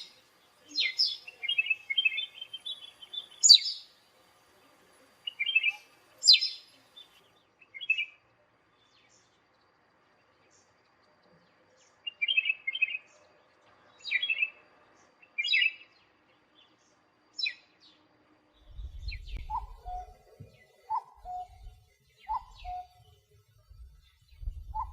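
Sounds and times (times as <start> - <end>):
bird sharp high calls: 0.0 - 3.9, 5.2 - 7.2, 18.7 - 23.3, 24.3 - 24.9
low rumble: 18.6 - 20.2.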